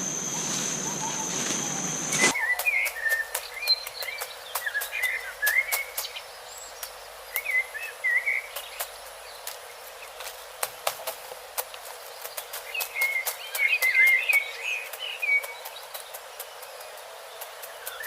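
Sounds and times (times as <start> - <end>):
whistled bird chirps: 0.0 - 4.0.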